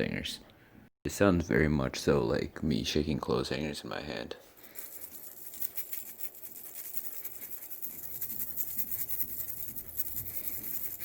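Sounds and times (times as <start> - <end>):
jewelry jingling in a hand: 4.6 - 11.0.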